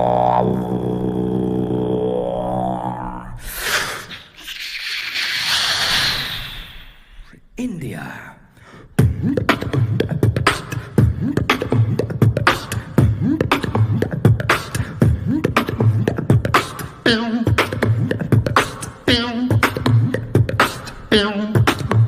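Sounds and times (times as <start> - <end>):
pulsing bass: 0.0 - 3.4
person beatboxing: 0.0 - 6.1, 8.9 - 22.0.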